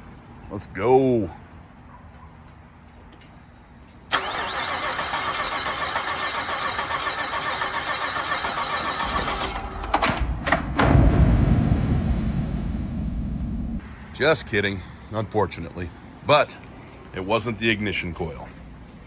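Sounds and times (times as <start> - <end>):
engine cranking on starter: 4.1 - 10.2
deep rumble: 10.2 - 14.1.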